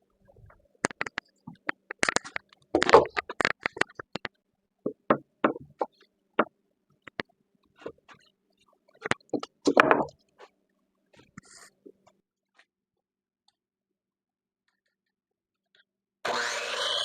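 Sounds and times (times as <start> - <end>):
wood and tools knocking: 4.9 - 6.5, 9.0 - 10.2.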